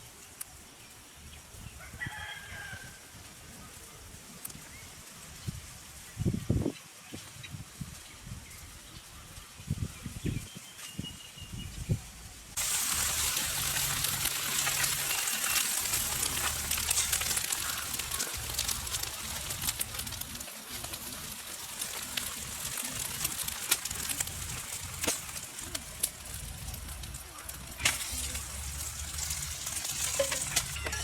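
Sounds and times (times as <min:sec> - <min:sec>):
food sizzling in a pan: 0:12.6 - 0:26.9, 0:27.6 - 0:31.0
pops and crackles: 0:12.6 - 0:31.0.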